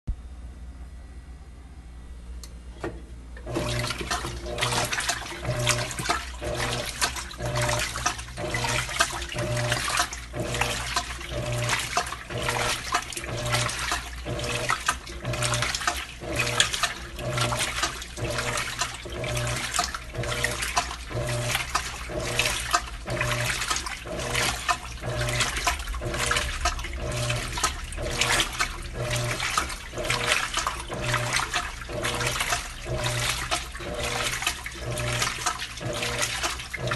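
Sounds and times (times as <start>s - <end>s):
washing machine water churning: 2.8s - 36.9s.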